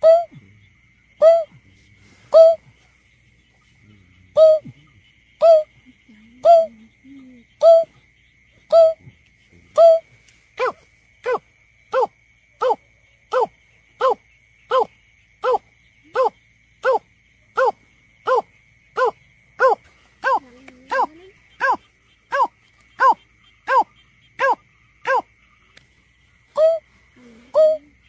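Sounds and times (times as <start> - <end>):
bird hooting call: 2.3 - 2.6, 4.4 - 4.7, 8.7 - 9.0.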